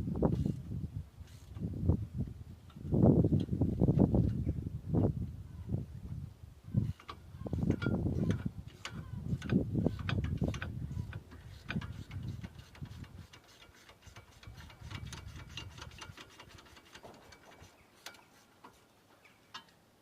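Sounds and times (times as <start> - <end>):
ratchet clicking: 6.8 - 18.8.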